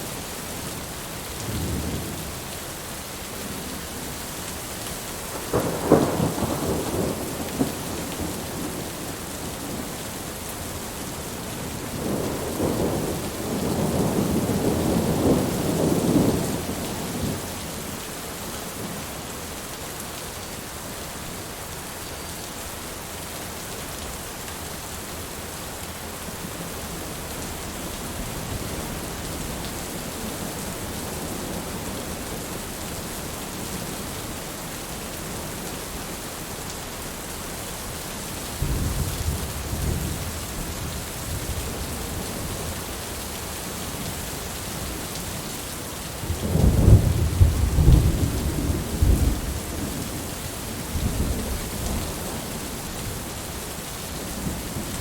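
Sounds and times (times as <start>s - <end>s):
heavy rain: 0.0s - 55.0s
thunder cracking and rumbling: 5.3s - 9.0s, 11.9s - 17.4s, 46.2s - 50.2s.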